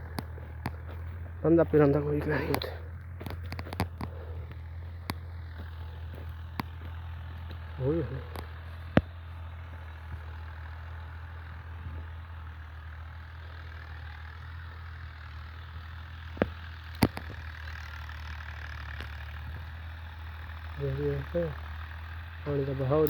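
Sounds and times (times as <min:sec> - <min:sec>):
engine humming: 0:00.0 - 0:23.0
sharp clicks: 0:02.5 - 0:07.7.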